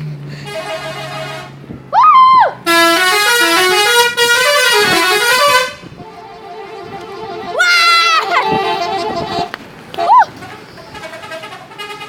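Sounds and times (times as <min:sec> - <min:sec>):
multi-tone musical vehicle horn: 0:00.3 - 0:01.8, 0:02.6 - 0:12.0.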